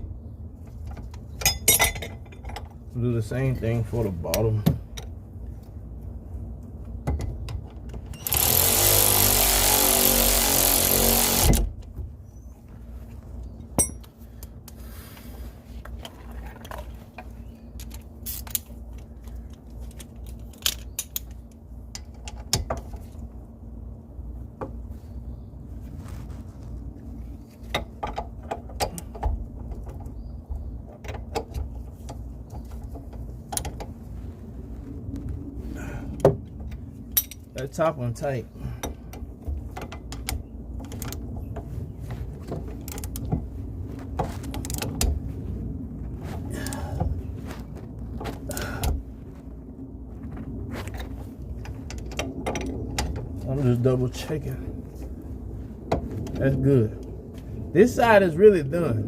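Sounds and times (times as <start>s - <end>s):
cordless ratchet buzzing: 8.2s - 11.7s.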